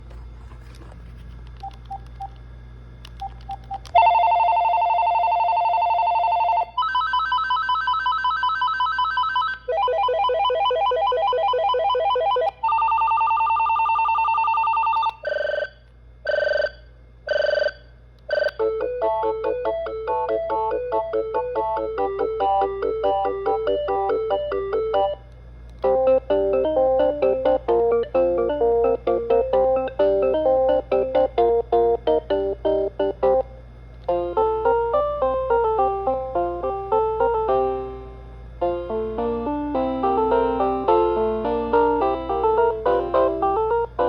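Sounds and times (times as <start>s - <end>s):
short phone rings: 4.0s - 10.3s
electronic trilling ringtone: 4.0s - 20.8s
melodic tune ringtone: 38.6s - 44.0s.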